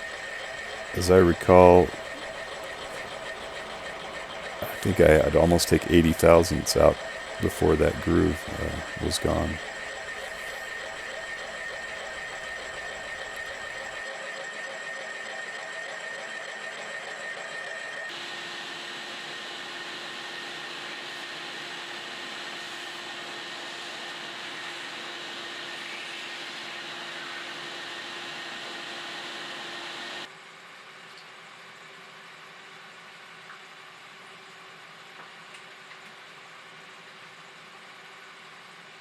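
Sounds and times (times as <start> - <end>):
milling machine hum and whine: 0.0 - 14.1.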